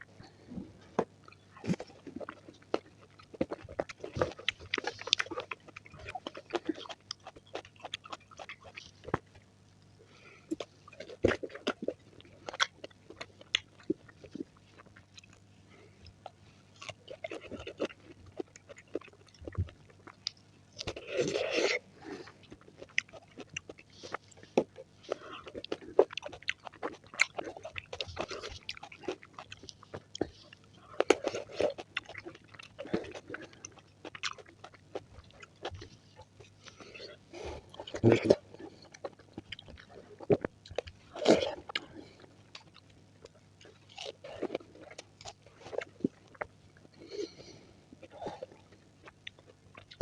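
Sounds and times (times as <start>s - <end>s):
biting and chewing fruit: 0.7s - 50.0s.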